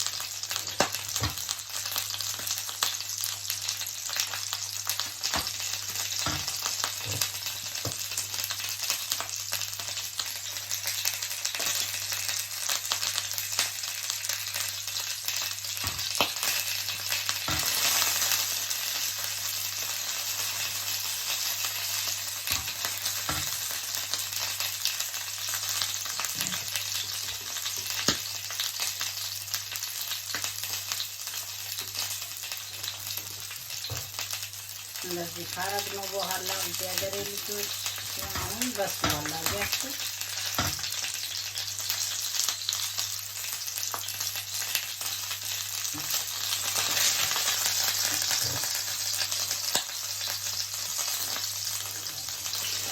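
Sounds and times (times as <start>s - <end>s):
fish fillets sizzling in a pan: 0.0s - 52.9s.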